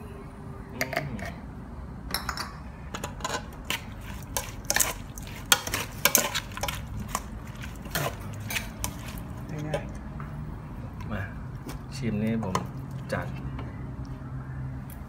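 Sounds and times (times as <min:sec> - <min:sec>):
utensil scraping a pot: 0:03.2 - 0:09.9.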